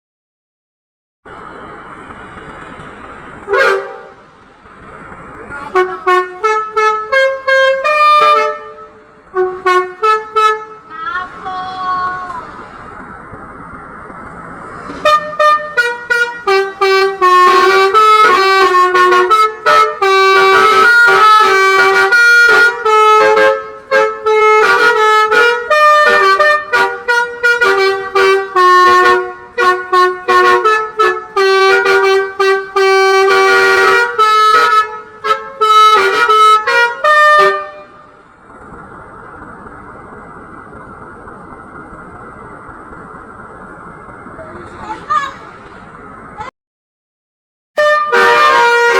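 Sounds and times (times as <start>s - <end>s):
musical air horn melody: 3.4s - 4.3s, 5.7s - 10.9s, 15.0s - 38.1s, 47.8s - 48.9s.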